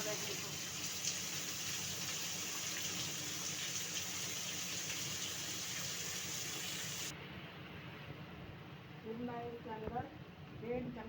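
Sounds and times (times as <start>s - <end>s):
onions sizzling in oil: 0.0s - 7.1s.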